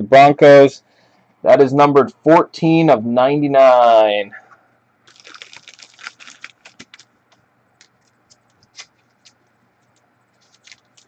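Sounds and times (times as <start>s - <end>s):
cards clicking and rustling: 5.1s - 11.0s.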